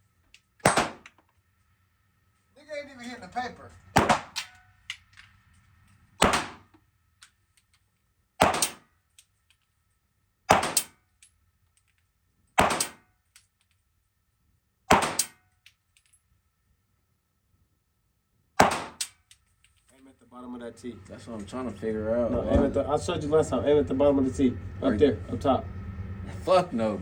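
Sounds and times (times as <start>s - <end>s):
gunshots echoing indoors: 0.7s - 1.1s, 4.0s - 4.6s, 6.2s - 6.6s, 8.4s - 8.8s, 10.5s - 10.9s, 12.6s - 13.0s, 14.9s - 15.4s, 18.6s - 19.1s.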